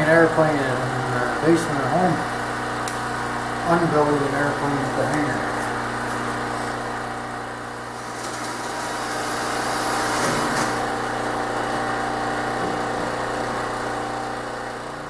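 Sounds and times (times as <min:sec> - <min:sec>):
machine motor droning: 0:00.0 - 0:15.0.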